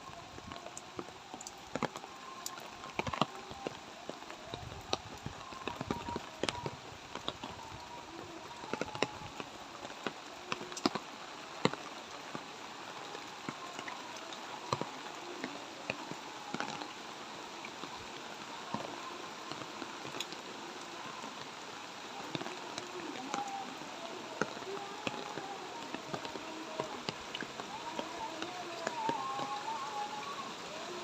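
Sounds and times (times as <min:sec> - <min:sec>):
light rain falling: 0:00.0 - 0:31.0.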